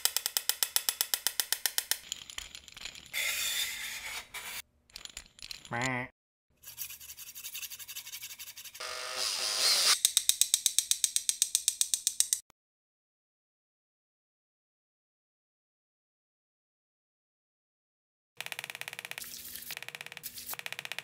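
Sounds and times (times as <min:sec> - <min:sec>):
scraping and rattling: 0:01.7 - 0:05.8.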